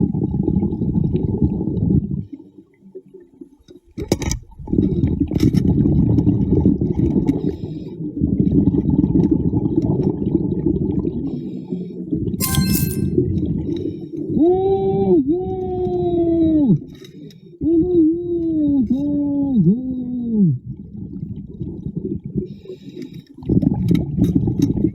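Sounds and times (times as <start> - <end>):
underwater rumble and bubbling: 0.0 - 11.2, 17.2 - 24.9.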